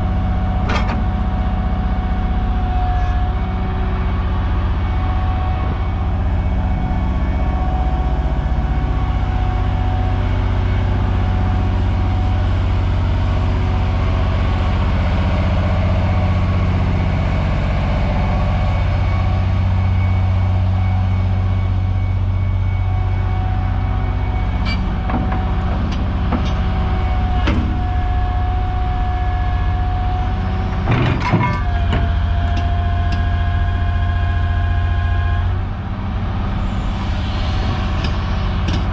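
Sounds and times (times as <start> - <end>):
excavator diesel engine running: 0.0 - 38.9
metal clanks and knocks: 0.6 - 1.1, 30.8 - 32.7
hydraulic whining: 22.0 - 38.9.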